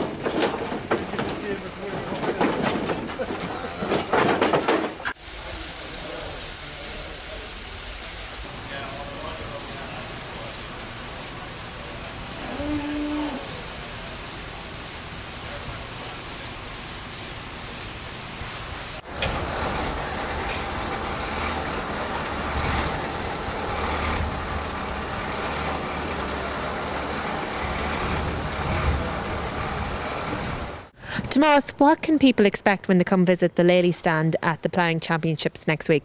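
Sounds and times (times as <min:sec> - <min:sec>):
truck engine running: 0:19.0 - 0:31.0
deep engine rumble: 0:19.1 - 0:31.0.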